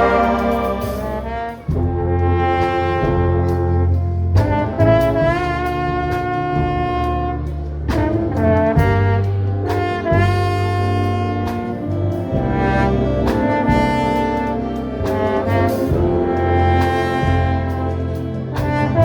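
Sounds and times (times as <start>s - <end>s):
orchestra brass chords: 0.0s - 19.0s
steady bass line: 0.0s - 19.0s.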